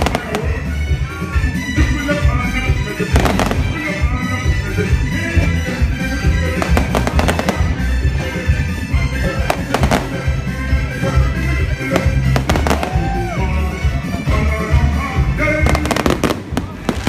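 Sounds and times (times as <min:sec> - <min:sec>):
music with heavy bass: 0:00.0 - 0:17.0
fireworks bangs: 0:03.0 - 0:04.1, 0:06.5 - 0:08.4, 0:15.6 - 0:17.0.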